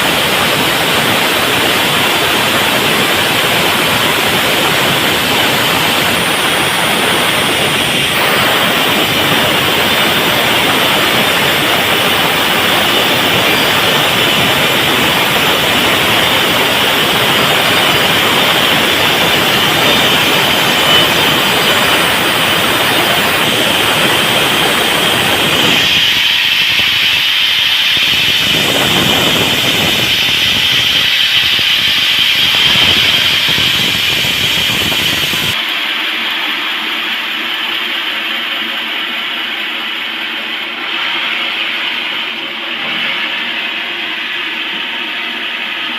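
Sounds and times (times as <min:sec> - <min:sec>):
sawmill saw cutting log: 0:00.0 - 0:35.6.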